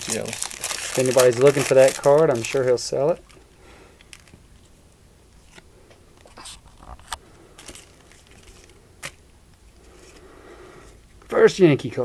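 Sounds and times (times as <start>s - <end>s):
trading cards rustling: 0.0s - 3.4s, 7.5s - 9.2s.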